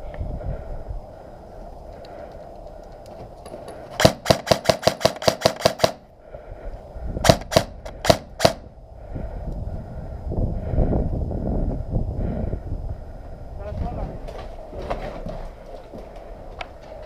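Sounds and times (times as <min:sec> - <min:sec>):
airsoft gun shots: 0:04.0 - 0:06.0, 0:07.2 - 0:08.7.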